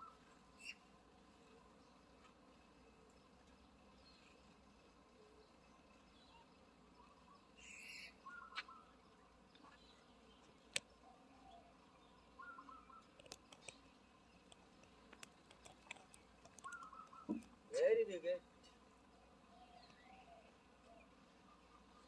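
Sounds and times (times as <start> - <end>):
faint bird chirps: 0.0 - 22.0
soft clicks: 10.7 - 11.0, 13.0 - 17.6.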